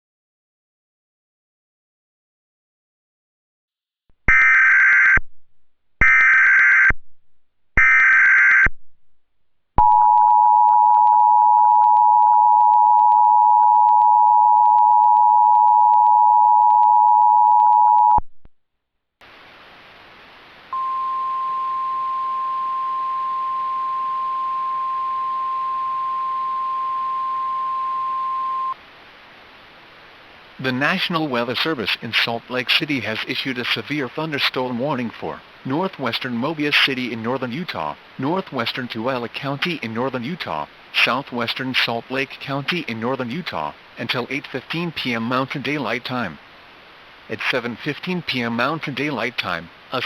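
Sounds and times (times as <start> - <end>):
radio static hiss: 19.2 - 20.8, 28.7 - 50.0.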